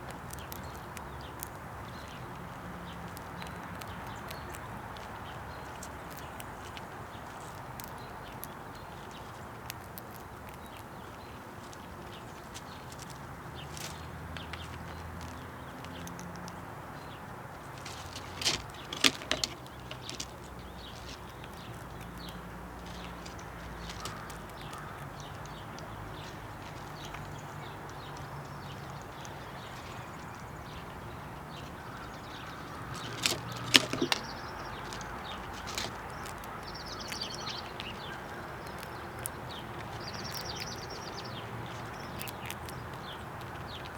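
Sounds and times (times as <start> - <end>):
squirrel knocking in wooden feeder: 17.8 - 20.4, 32.6 - 36.3.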